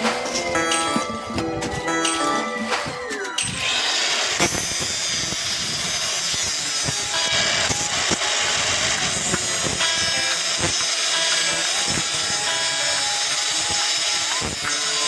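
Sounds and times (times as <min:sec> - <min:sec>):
music: 0:00.0 - 0:15.0
power tool hissing: 0:03.5 - 0:15.0.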